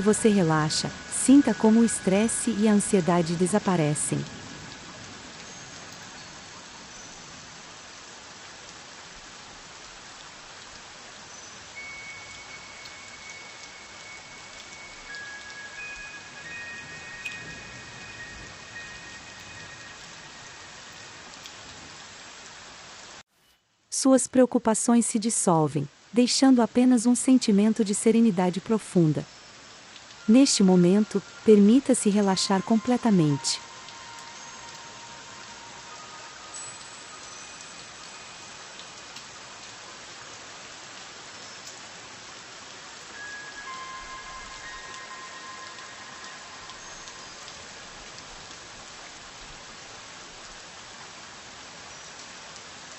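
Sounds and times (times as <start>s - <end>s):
soft rain patter: 0.0s - 52.9s
held high music tones: 11.8s - 21.3s, 30.2s - 38.8s, 43.1s - 47.8s.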